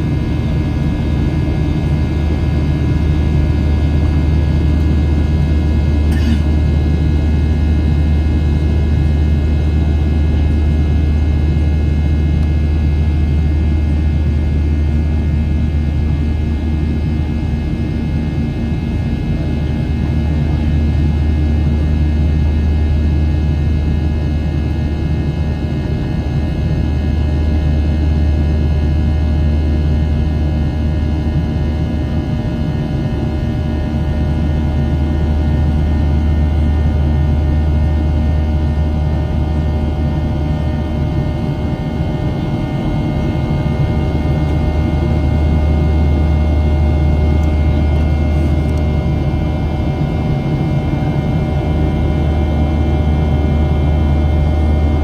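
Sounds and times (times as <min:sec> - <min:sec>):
airplane cabin rumble: 0:00.0 - 0:55.0
jet engine whining tones: 0:05.9 - 0:06.7.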